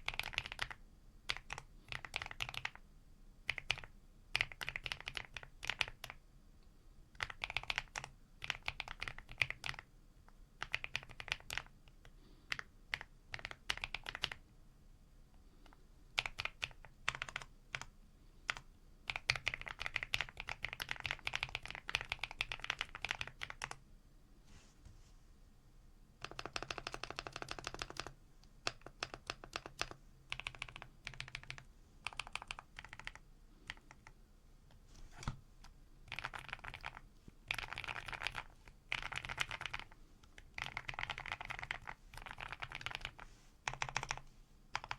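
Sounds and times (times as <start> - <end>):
mechanical keyboard typing: 0.0 - 2.8, 3.5 - 6.2, 7.1 - 9.9, 10.6 - 11.7, 12.5 - 14.4, 16.2 - 17.9, 18.5 - 23.8, 26.2 - 34.2, 36.1 - 44.9.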